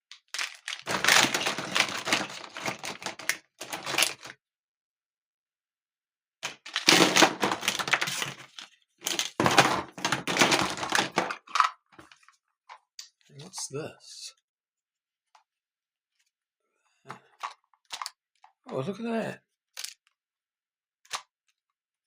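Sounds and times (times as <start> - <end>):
plastic toy track pieces clattering: 0.1 - 4.3, 6.4 - 11.8, 17.4 - 18.2, 19.8 - 20.1.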